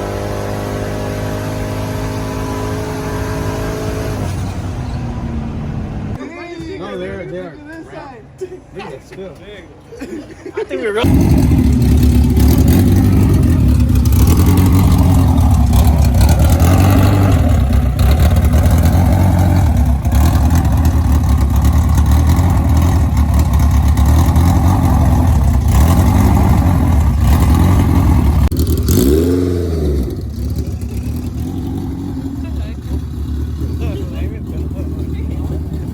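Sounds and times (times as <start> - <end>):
car engine running under throttle: 0.0 - 6.2, 11.0 - 35.9
low exhaust rumble: 11.0 - 29.0, 29.7 - 35.9.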